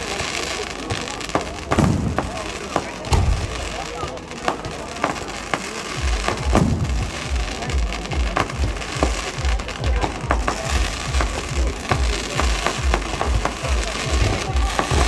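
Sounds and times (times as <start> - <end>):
fireworks bangs and crackling: 0.0 - 15.0
music with deep beat: 4.6 - 15.0.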